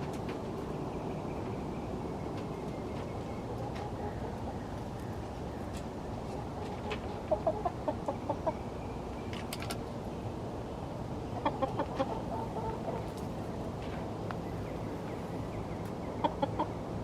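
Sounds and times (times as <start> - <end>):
low background noise: 0.0 - 17.0
hens clucking: 2.4 - 8.8, 11.2 - 14.0, 14.6 - 16.9.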